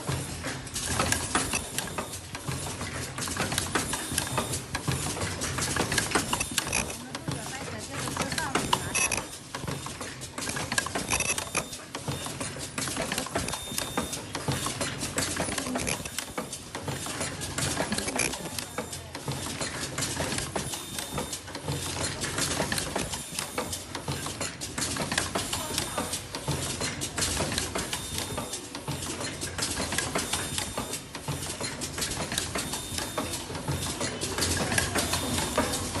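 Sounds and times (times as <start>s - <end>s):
mechanical clicking and clattering: 0.0s - 36.0s
welding machine running: 5.6s - 11.7s, 14.6s - 16.4s, 17.2s - 18.6s.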